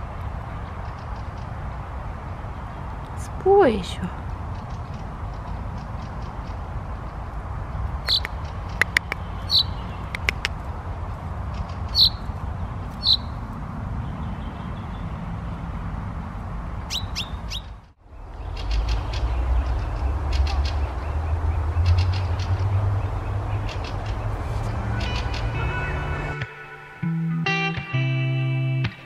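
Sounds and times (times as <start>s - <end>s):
steady low rumble: 0.0s - 26.5s
bird short sharp calls: 8.0s - 10.6s, 11.9s - 12.3s, 13.0s - 13.4s.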